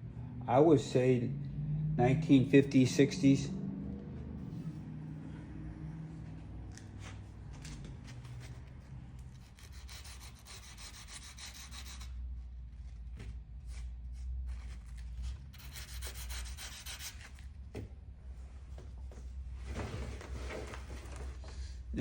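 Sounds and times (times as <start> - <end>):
sandpaper rubbing on plaster: 9.4 - 12.1, 15.5 - 17.4.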